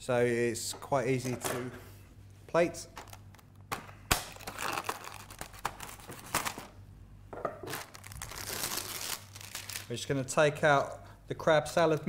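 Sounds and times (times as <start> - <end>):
packaging crinkling and rustling: 2.9 - 6.8, 7.6 - 10.0.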